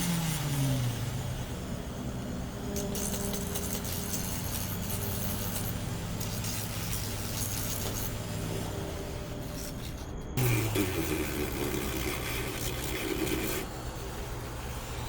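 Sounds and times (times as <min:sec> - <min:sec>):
steady low hum: 0:00.0 - 0:15.0
small metal parts clinking: 0:02.8 - 0:08.2.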